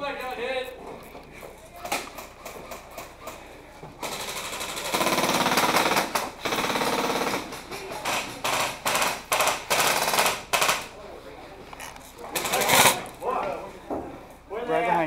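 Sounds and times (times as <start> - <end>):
airsoft guns firing full auto: 4.0 - 11.0, 12.4 - 13.0.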